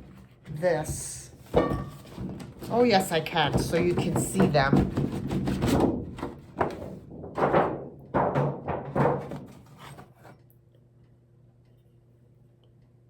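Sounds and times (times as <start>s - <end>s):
hollow knocks and clunks: 0.8s - 10.2s
faint steady hum: 10.0s - 13.0s.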